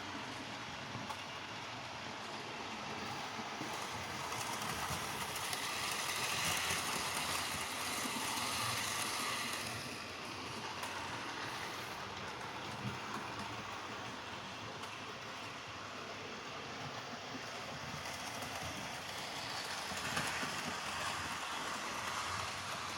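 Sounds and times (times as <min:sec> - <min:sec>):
model train running on track: 0:00.0 - 0:22.9.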